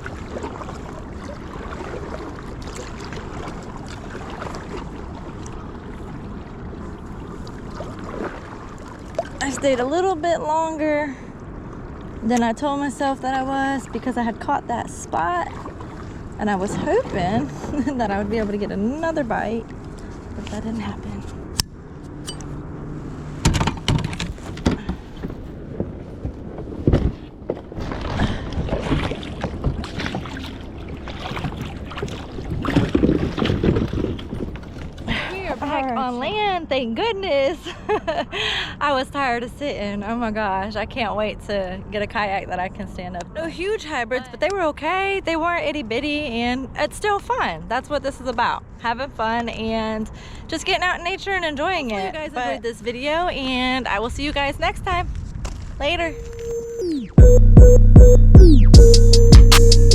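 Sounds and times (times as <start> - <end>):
rushing water: 0.0 - 20.9, 27.8 - 36.4
water lapping against kayak: 0.0 - 38.8
wind noise: 2.9 - 35.6, 53.3 - 56.4
kayak and paddle knocking: 23.4 - 35.1.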